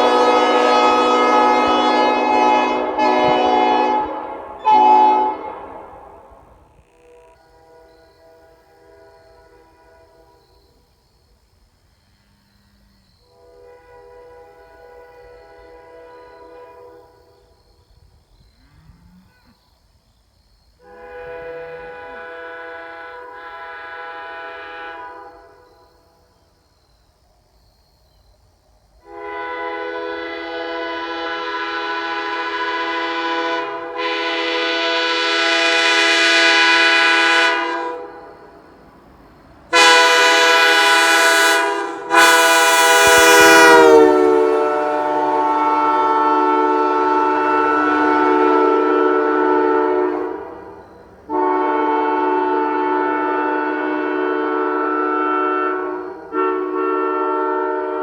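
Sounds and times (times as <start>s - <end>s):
air horn chord: 0.0s - 10.3s, 20.8s - 25.7s, 29.0s - 38.4s, 39.7s - 58.0s.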